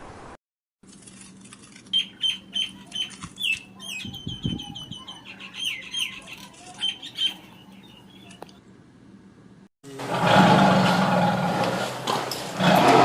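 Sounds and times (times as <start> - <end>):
bird chirping: 2.0 - 8.7.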